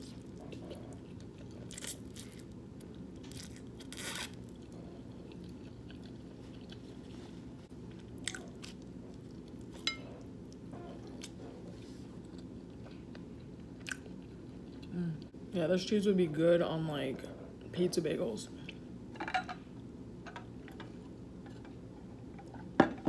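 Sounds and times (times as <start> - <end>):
chewing: 0.0 - 7.2, 8.0 - 15.0
steady low hum: 0.0 - 23.0.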